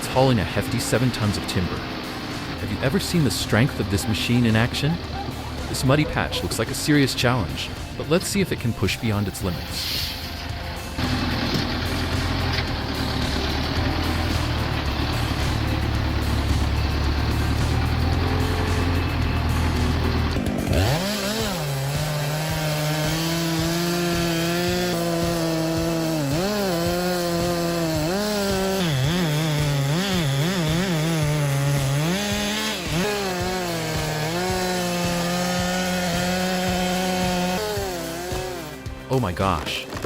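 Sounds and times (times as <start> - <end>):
chainsaw cutting wood: 0.0 - 8.5, 9.1 - 40.0.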